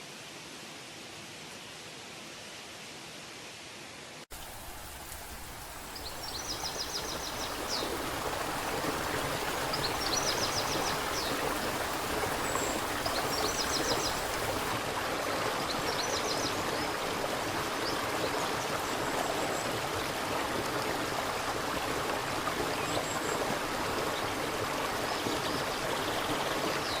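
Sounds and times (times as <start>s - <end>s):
rushing mountain stream: 4.3s - 27.0s
songbird trilling: 9.5s - 14.7s.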